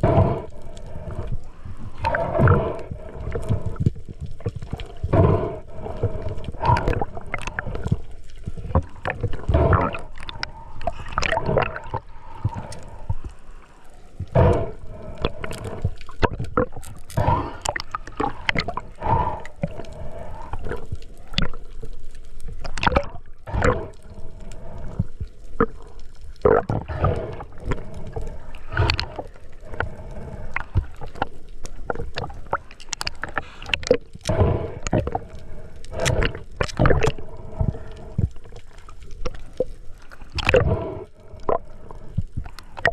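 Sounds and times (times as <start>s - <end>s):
water gurgling and sloshing: 0.0s - 42.9s.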